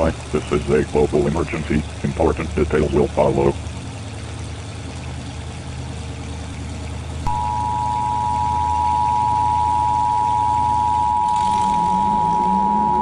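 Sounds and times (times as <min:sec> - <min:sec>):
low hum: 0:00.0 - 0:13.0
harsh alarm tone: 0:07.2 - 0:13.0.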